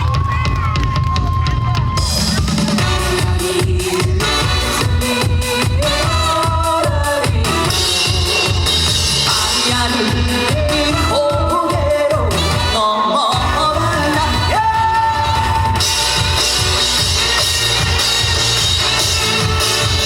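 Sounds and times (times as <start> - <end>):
amplified backing track with drums: 0.0 - 20.0
man singing: 2.8 - 15.7.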